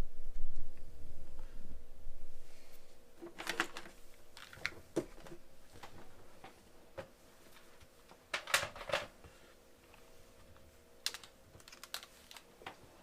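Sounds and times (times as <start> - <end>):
small objects clicking and rustling: 3.2 - 4.8, 11.0 - 12.5.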